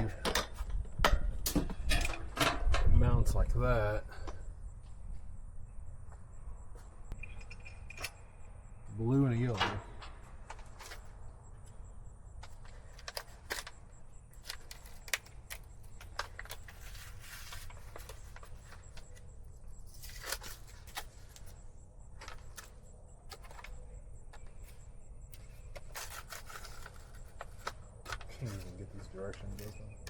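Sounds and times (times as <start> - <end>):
rustling: 12.5 - 21.6.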